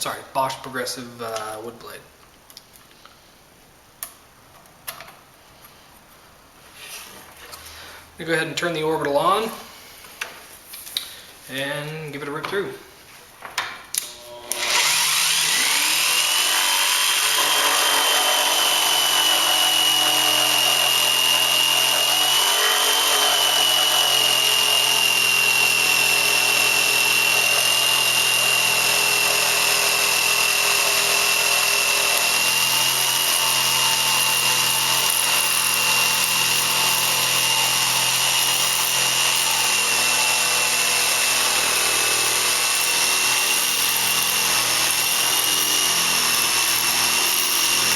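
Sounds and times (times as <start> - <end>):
jigsaw cutting wood: 14.2 - 47.9.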